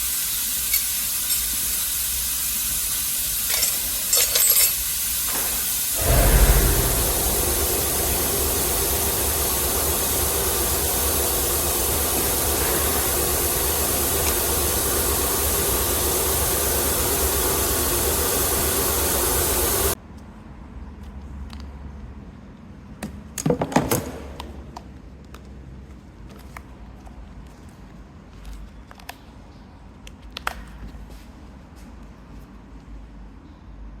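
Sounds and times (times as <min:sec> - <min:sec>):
machine humming and hissing: 0:05.2 - 0:20.0.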